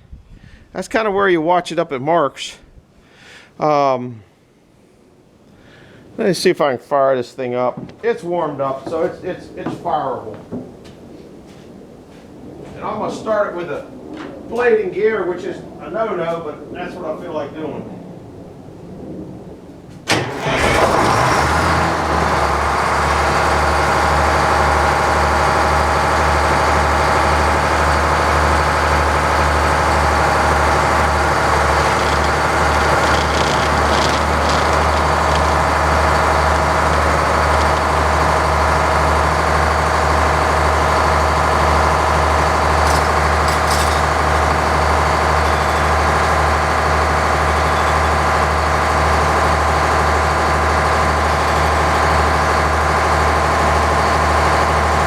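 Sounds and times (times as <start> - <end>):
engine running with low pulse: 20.0 - 55.0.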